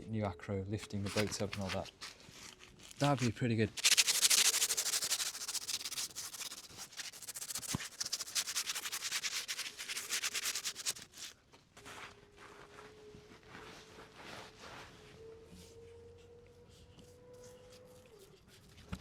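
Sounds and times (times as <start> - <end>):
hand sanding rust off steel: 2.4 - 11.3.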